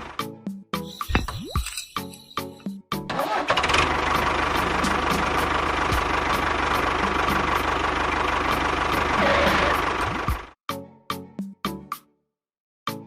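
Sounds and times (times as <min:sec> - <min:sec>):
small engine chugging: 0:03.2 - 0:10.5.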